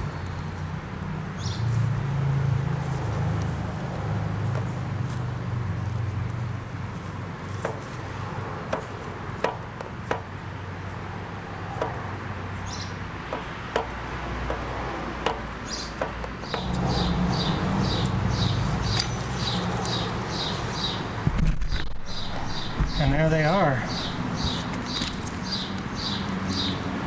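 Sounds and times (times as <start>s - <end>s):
bird chirping: 12.6s - 13.0s, 15.6s - 26.9s.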